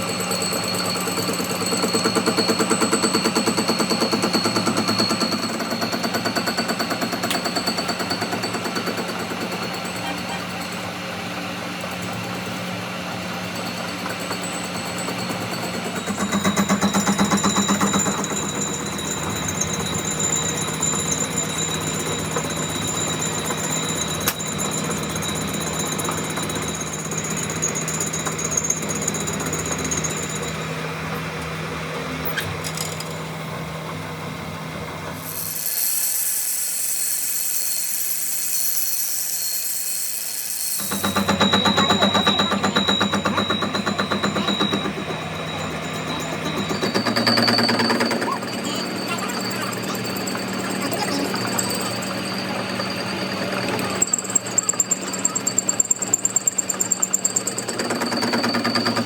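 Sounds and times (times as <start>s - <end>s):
whining tones: 13.8s - 59.0s.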